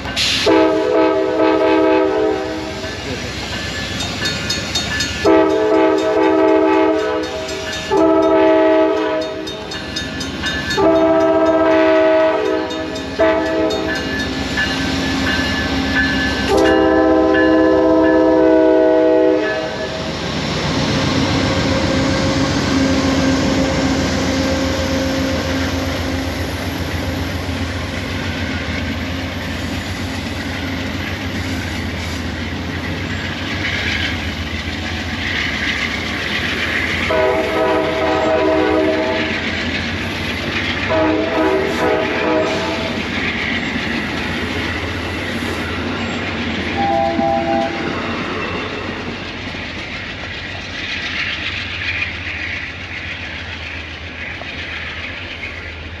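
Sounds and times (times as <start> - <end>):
train wheels clacking on rails: 0.0 - 56.0
locomotive air horn blasts: 0.4 - 2.8, 5.2 - 9.4, 10.8 - 13.9, 16.5 - 20.0, 37.1 - 39.3, 40.9 - 43.0, 46.8 - 47.9.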